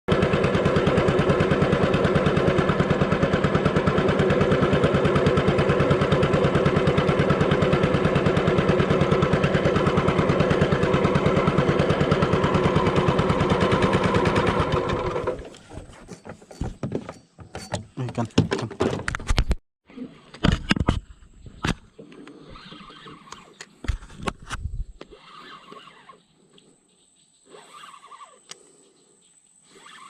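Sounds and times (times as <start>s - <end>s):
boat engine throbbing: 0.1s - 18.6s.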